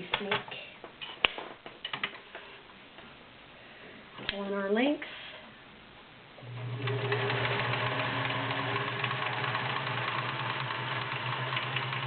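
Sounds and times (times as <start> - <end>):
sewing machine motor hum: 6.4 - 12.0.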